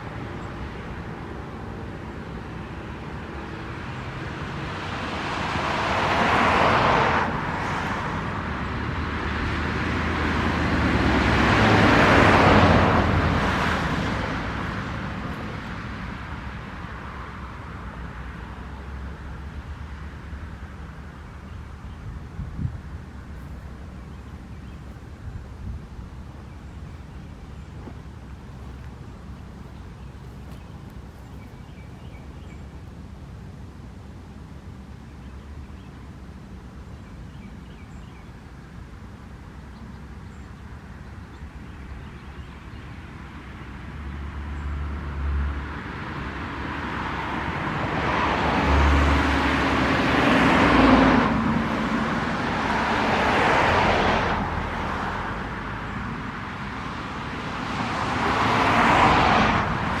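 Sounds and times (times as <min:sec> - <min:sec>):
vehicles passing: 0:00.0 - 1:00.0
low background rumble: 0:14.2 - 0:37.1.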